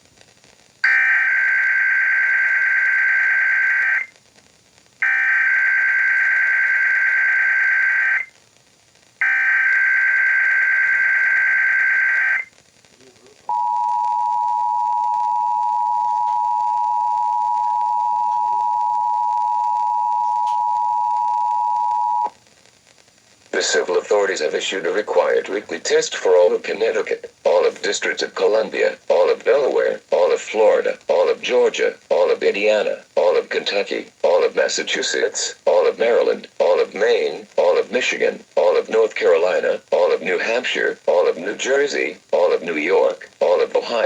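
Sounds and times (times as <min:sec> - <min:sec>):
digital data tone squawks: 0:00.8 - 0:04.1, 0:05.0 - 0:08.3, 0:09.2 - 0:12.5
two-tone attention signal: 0:13.5 - 0:22.3.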